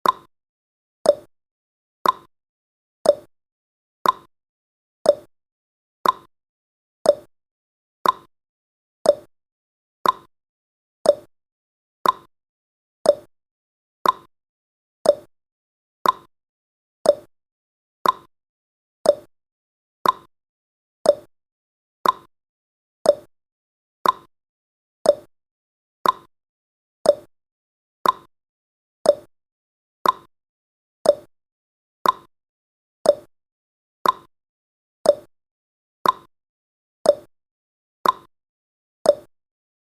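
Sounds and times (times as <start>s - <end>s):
timer tick-tock: 0.0s - 0.3s, 1.0s - 1.3s, 2.0s - 2.3s, 3.0s - 3.3s, 4.0s - 4.3s, 5.0s - 5.3s, 6.0s - 6.3s, 7.0s - 7.3s, 8.0s - 8.3s, 9.0s - 9.3s, 10.0s - 10.3s, 11.0s - 11.3s, 12.0s - 12.3s, 13.0s - 13.3s, 14.0s - 14.3s, 15.0s - 15.3s, 16.0s - 16.3s, 17.0s - 17.3s, 18.0s - 18.3s, 19.0s - 19.3s, 20.0s - 20.3s, 21.0s - 21.3s, 22.0s - 22.3s, 23.0s - 23.3s, 24.0s - 24.3s, 25.0s - 25.3s, 26.0s - 26.3s, 27.0s - 27.3s, 28.0s - 28.3s, 29.0s - 29.3s, 30.0s - 30.3s, 31.0s - 31.3s, 32.0s - 32.3s, 33.0s - 33.4s, 34.0s - 34.4s, 35.0s - 35.4s, 36.0s - 36.3s, 37.0s - 37.3s, 38.0s - 38.4s, 39.0s - 39.4s.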